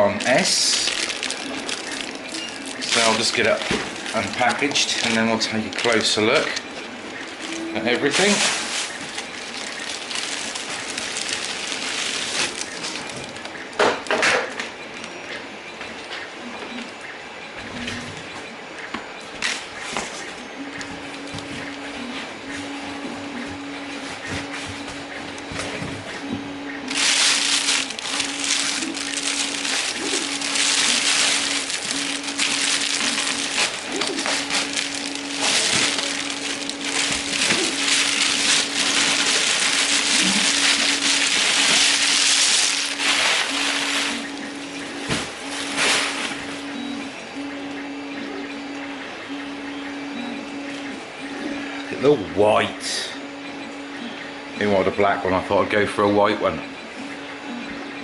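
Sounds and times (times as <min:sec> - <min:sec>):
packaging rustling and crinkling: 0:00.0 - 0:14.1, 0:26.9 - 0:46.6.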